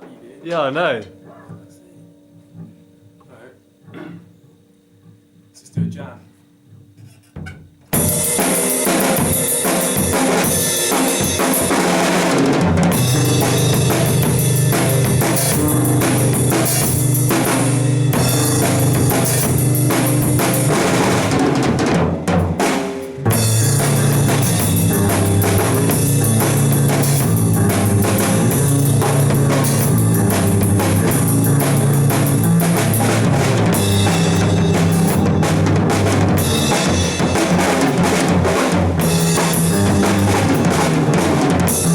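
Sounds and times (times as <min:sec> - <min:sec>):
drum kit kick and snare: 0:06.8 - 0:41.9
band jamming: 0:07.9 - 0:41.9
low bass notes: 0:12.9 - 0:21.8, 0:23.2 - 0:41.9.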